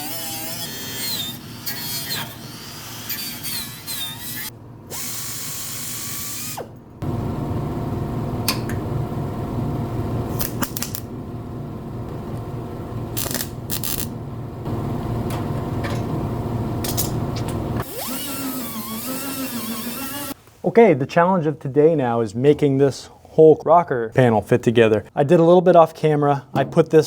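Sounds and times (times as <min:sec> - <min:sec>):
quiet machine hum: 0:00.0 - 0:21.0
power tool running: 0:04.2 - 0:07.8, 0:13.0 - 0:15.4, 0:16.8 - 0:20.4.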